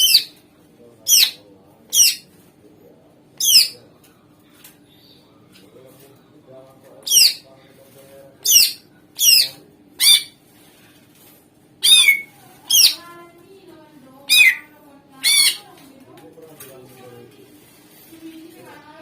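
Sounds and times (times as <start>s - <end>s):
bird giving sharp calls: 8.4s - 10.4s, 11.8s - 13.0s, 14.3s - 15.7s.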